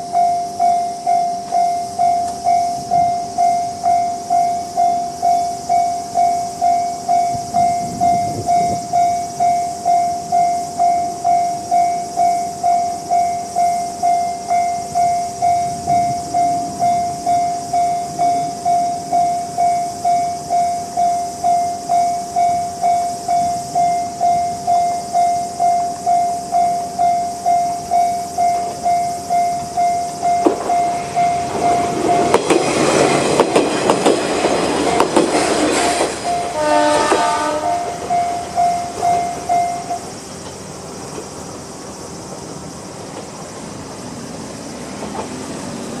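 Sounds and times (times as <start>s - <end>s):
level crossing warning bell: 0.0s - 40.4s
diesel railcar engine: 0.0s - 46.0s
wheels clattering over rail joints: 29.6s - 41.5s, 44.8s - 46.0s.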